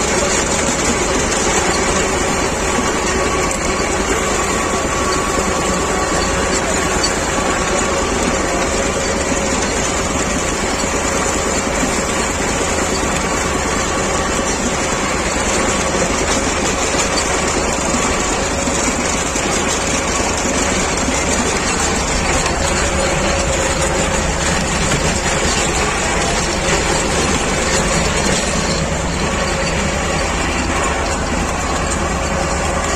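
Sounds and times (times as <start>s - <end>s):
tractor diesel engine running: 0.0s - 32.9s.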